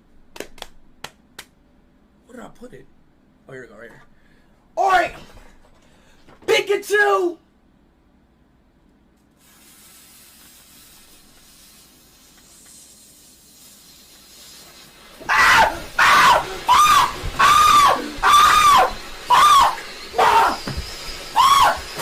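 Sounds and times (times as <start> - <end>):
man screaming: 4.8 - 5.2, 15.2 - 22.0
firework fuse hissing: 9.3 - 22.0.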